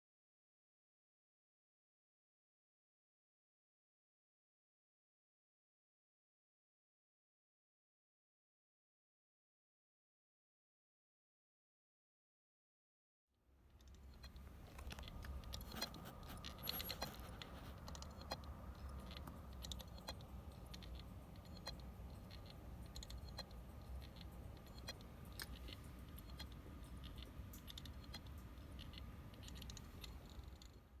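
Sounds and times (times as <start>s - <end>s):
hard disk drive hum: 13.8s - 31.0s.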